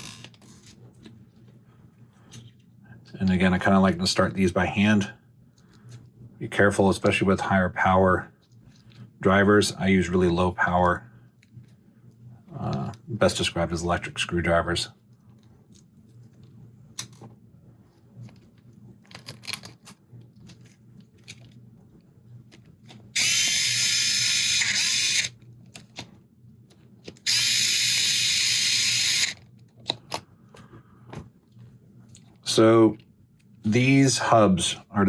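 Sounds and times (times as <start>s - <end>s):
electric screwdriver driving screws: 23.2s - 25.3s, 27.3s - 29.4s
small parts clicking: 26.7s - 30.3s.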